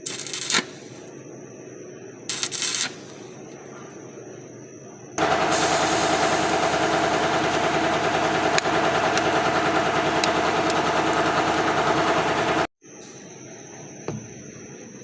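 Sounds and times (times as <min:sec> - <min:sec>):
small motorized tool running: 0:05.2 - 0:12.7.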